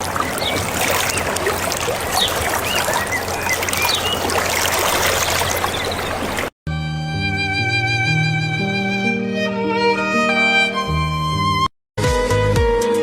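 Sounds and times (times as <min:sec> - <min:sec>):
birds chirping: 0:00.0 - 0:06.5
stream water running: 0:00.0 - 0:06.6.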